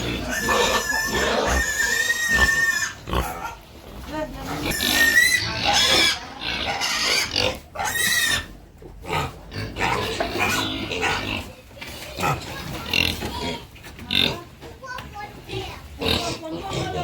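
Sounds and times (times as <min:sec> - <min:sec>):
pigs squealing: 0:00.0 - 0:03.6, 0:04.5 - 0:11.6.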